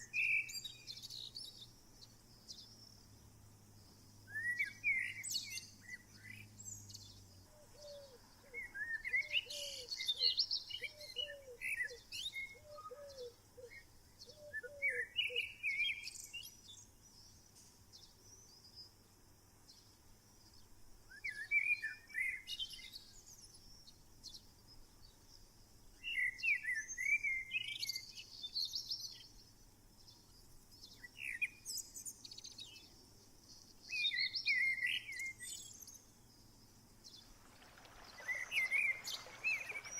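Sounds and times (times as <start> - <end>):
birds chirping song: 0.0 - 39.9.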